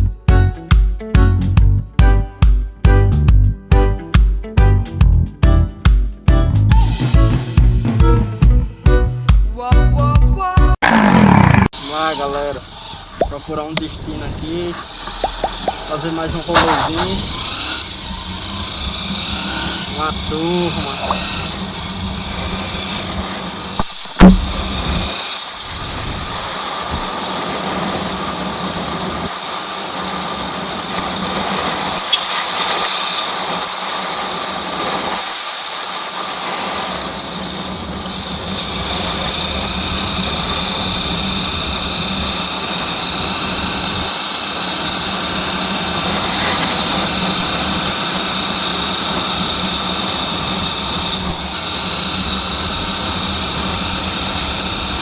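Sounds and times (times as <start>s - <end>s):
sharp knock: 23.8s - 24.6s.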